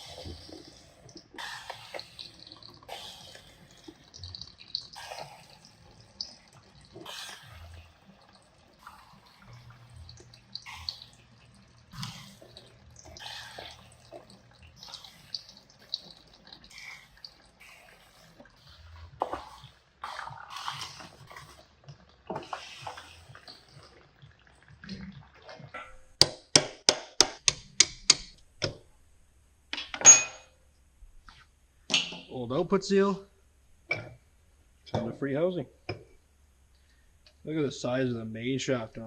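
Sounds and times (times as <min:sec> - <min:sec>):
metal tools clattering: 0:29.9 - 0:30.5.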